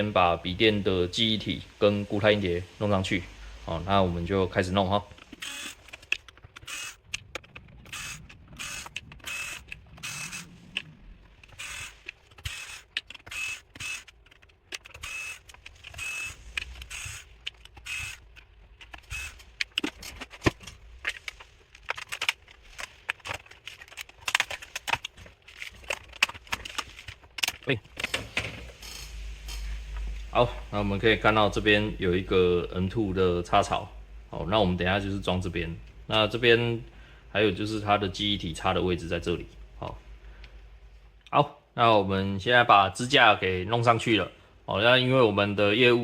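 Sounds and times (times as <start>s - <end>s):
small clicks and scrapes: 5.0s - 30.3s.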